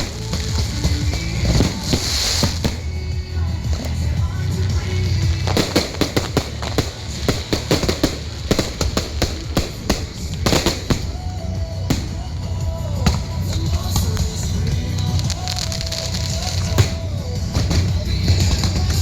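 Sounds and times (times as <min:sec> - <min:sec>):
fireworks bangs and crackles: 0:00.0 - 0:19.0
music: 0:00.0 - 0:19.0.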